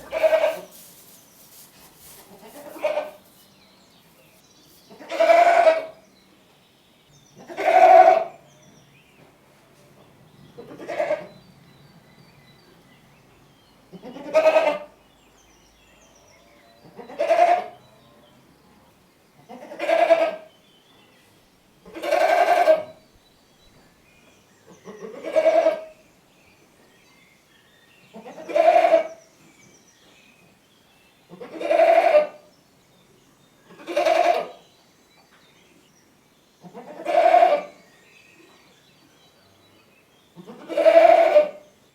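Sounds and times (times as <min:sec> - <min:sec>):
goat bleating: 0:00.0 - 0:00.7, 0:02.3 - 0:03.2, 0:05.0 - 0:05.9, 0:40.4 - 0:41.6.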